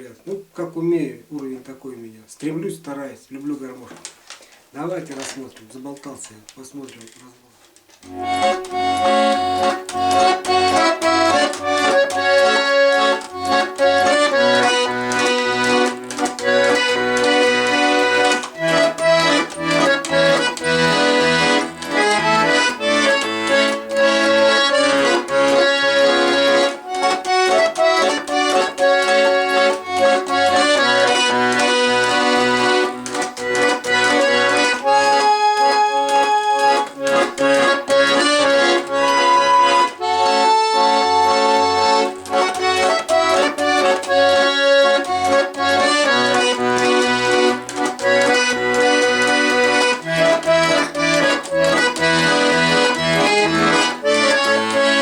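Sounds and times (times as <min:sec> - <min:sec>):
button accordion playing: 0:08.0 - 0:55.0.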